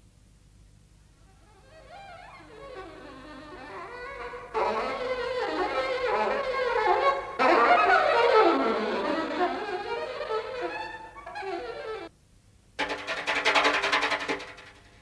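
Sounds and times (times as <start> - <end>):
violin film score music: 1.5 - 12.1.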